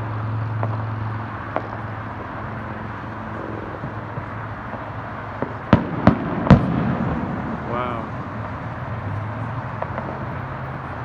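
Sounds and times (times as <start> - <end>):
steady low hum: 0.0 - 11.0
distant firework pops: 1.5 - 2.5, 3.8 - 7.7, 9.7 - 10.9.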